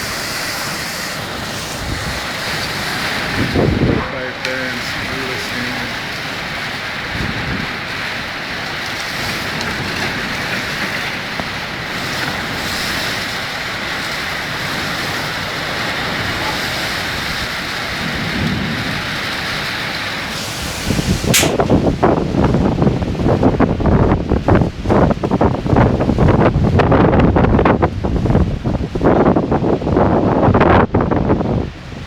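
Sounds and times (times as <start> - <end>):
heavy rain pouring: 0.0 - 32.0
wind gusts buffeting microphone: 0.0 - 32.0
sharp click: 21.3 - 21.8.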